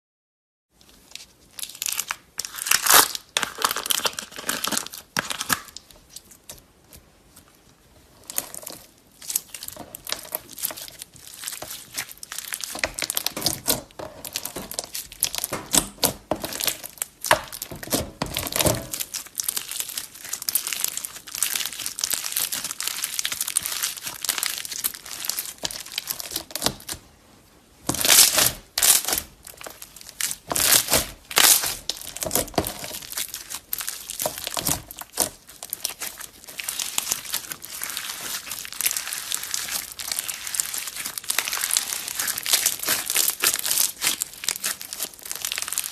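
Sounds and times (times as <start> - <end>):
slime squeezed by hand crackling: 1.6 - 6.5, 18.9 - 27.0, 28.0 - 45.9.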